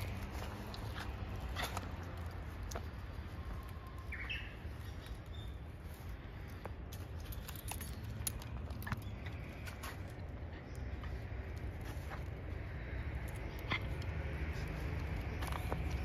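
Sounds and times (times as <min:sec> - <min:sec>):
light clicks and ticks: 0:00.0 - 0:04.2, 0:04.9 - 0:16.0
bird singing: 0:03.6 - 0:05.7.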